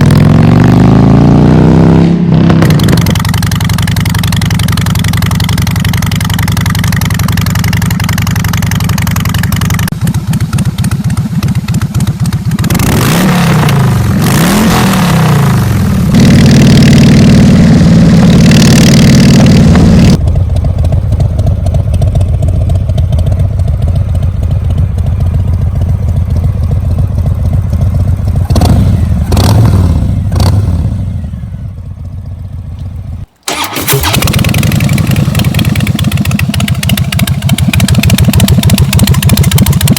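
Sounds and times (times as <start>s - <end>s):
motorcycle engine idling: 2.6s - 14.3s, 20.1s - 39.9s.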